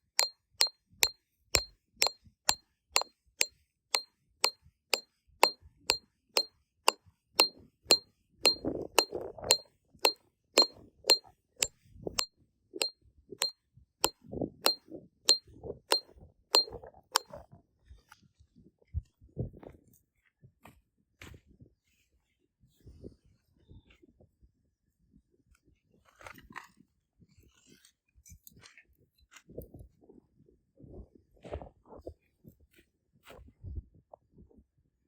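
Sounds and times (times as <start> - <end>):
hammer striking steel stake: 0.0 - 0.3, 1.6 - 2.2, 7.4 - 9.6.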